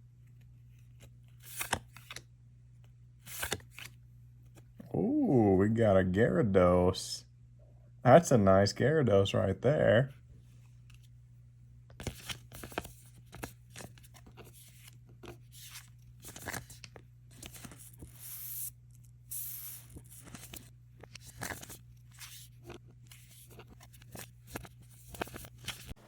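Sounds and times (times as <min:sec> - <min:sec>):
faint steady hum: 0:00.0 - 0:26.0
cards sliding and clicking: 0:00.3 - 0:02.3, 0:03.2 - 0:04.9, 0:11.9 - 0:26.0.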